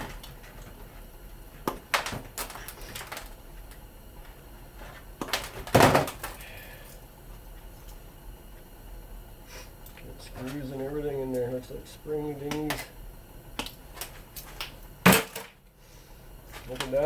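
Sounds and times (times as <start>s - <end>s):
plastic parts knocking and clattering: 1.6s - 3.4s, 5.2s - 6.4s, 13.6s - 15.6s.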